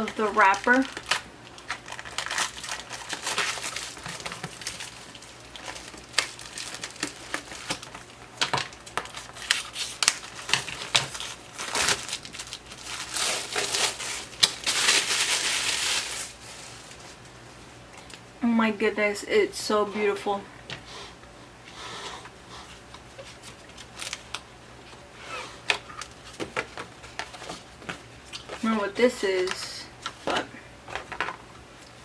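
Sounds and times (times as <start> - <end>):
wrapper crinkling: 0.0 - 17.3, 23.2 - 24.4.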